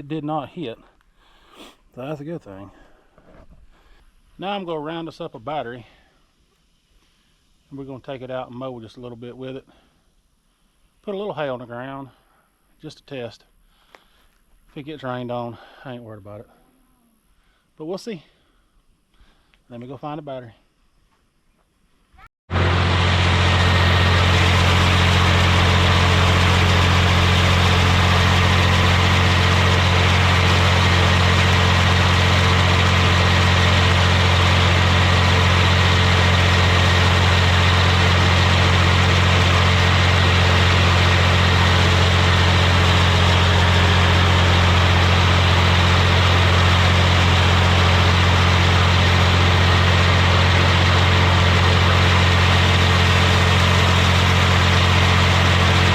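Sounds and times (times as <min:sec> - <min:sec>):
tractor engine running: 0:22.5 - 0:55.9.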